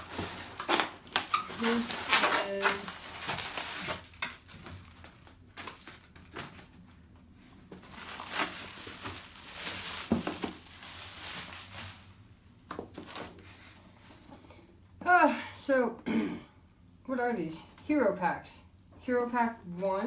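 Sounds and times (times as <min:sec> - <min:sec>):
cardboard and plastic rustling: 0:00.0 - 0:14.5.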